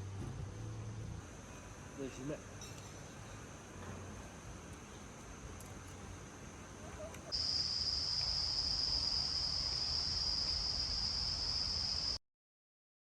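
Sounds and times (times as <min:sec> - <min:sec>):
faint outdoor ambience: 0:00.0 - 0:12.2
high-pitched insect drone: 0:07.4 - 0:12.2.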